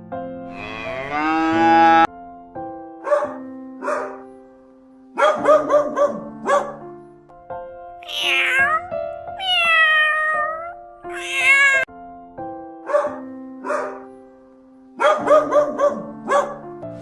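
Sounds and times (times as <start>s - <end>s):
background music: 0.0s - 17.0s
cat meowing: 8.0s - 11.9s.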